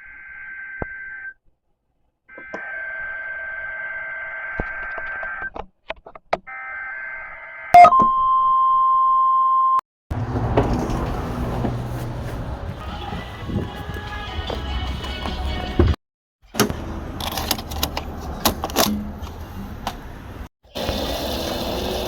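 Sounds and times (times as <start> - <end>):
dense noisy mix: 10.1 - 16.0.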